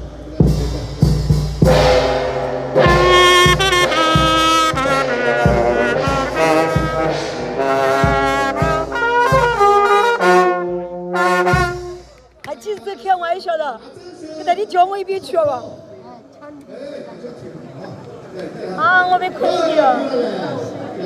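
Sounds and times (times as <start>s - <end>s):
brass horns playing melody: 0.0s - 12.4s
steady drum beat: 0.0s - 12.5s.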